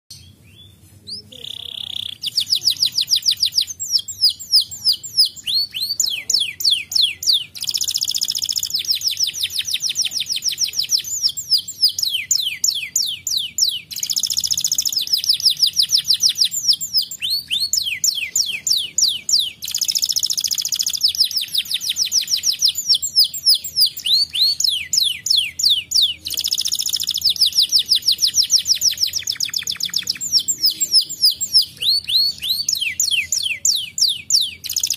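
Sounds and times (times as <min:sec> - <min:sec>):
canary singing trills: 0:00.1 - 0:34.9.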